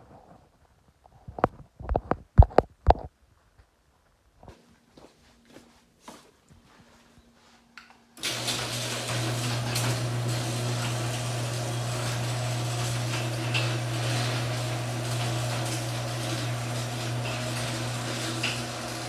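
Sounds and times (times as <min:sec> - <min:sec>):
garage door opener motor humming: 0:08.2 - 0:19.0.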